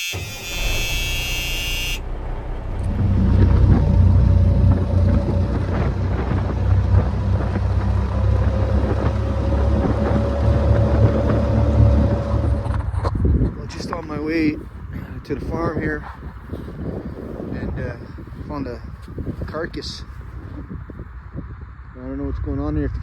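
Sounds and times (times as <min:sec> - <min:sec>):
high electronic tone: 0:00.0 - 0:05.4
vehicle engine rumbling: 0:00.0 - 0:21.2.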